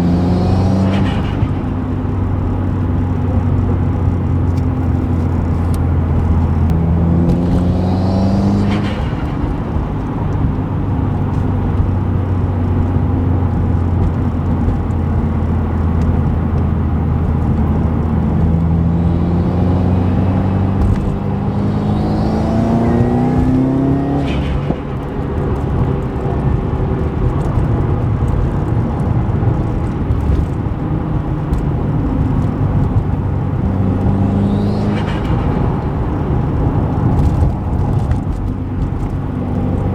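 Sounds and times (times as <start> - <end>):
turbocharged car engine revving: 0.0 - 39.9
turbo flutter rush: 4.2 - 11.7, 18.5 - 25.9, 32.9 - 38.0.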